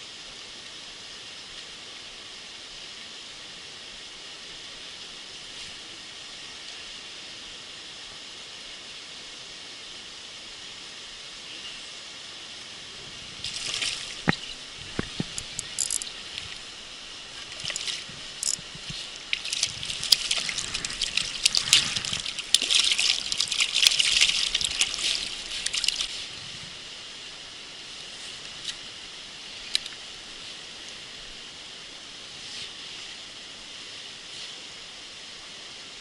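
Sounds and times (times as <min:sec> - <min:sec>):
outdoor background noise: 0:00.0 - 0:36.0
water splashing and sloshing: 0:13.0 - 0:26.8.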